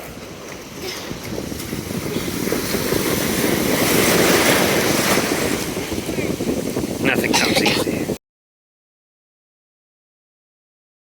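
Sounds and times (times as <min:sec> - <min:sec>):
ocean surf washing in: 0:00.0 - 0:08.2
wind buffeting microphone: 0:00.0 - 0:08.2.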